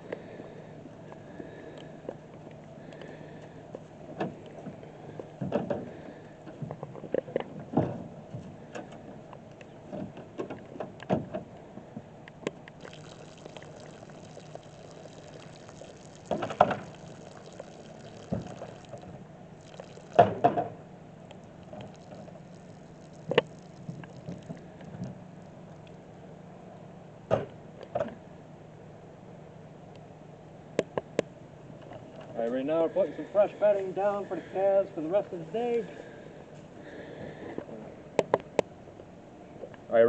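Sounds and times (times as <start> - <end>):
steady low hum: 0.0 - 40.0
water gurgling through pipeline: 12.7 - 26.0.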